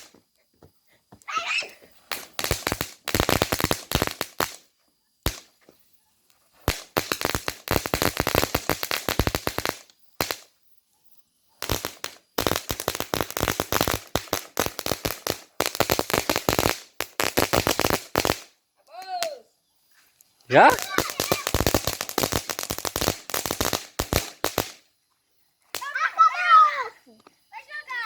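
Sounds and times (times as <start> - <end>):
firecrackers crackling: 1.9 - 10.6, 11.6 - 19.4, 20.5 - 24.9, 25.6 - 26.9.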